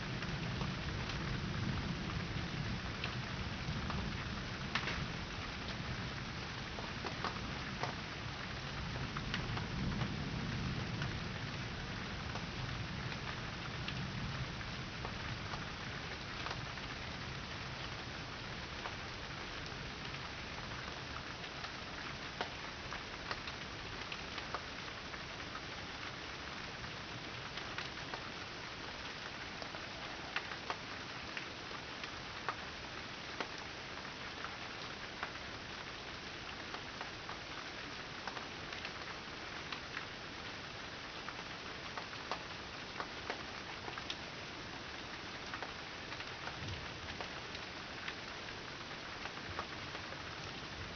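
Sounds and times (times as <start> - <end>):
steady rain falling: 0.0 - 50.9
raindrops ticking: 6.6 - 8.0, 41.2 - 44.2.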